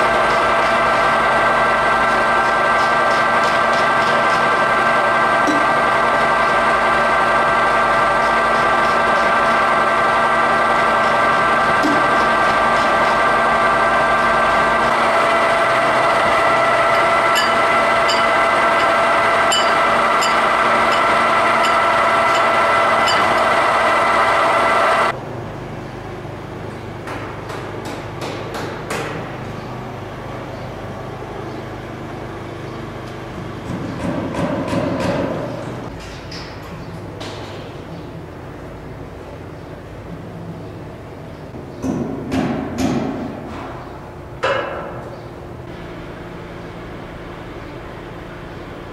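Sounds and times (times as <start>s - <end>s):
lathe running with whine: 0.0s - 25.2s
quiet machine hum: 0.0s - 48.9s.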